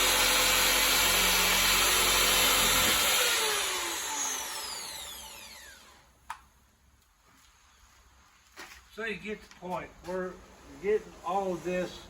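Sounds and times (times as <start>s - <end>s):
power tool grinding: 0.0s - 6.1s
power tool spinning down: 0.0s - 6.1s.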